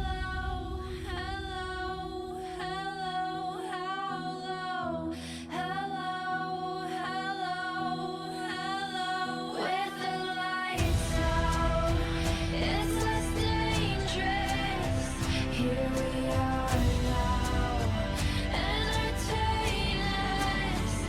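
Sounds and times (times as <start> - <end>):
solo voice singing held notes: 0.0 - 21.0
low steady drone: 10.8 - 21.0.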